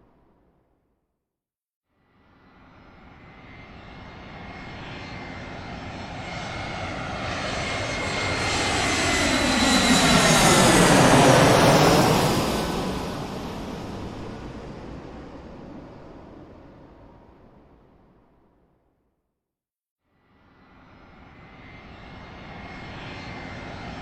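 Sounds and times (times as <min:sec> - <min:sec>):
airplane flying past: 0:02.2 - 0:17.8, 0:20.5 - 0:24.0.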